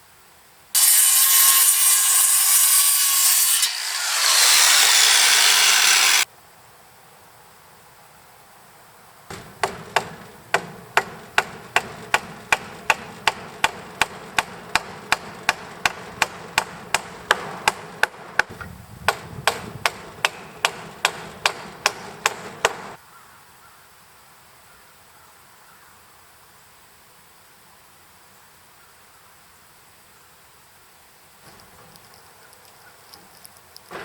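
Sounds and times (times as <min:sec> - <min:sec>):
hammer blows on wood: 0:09.3 - 0:23.0.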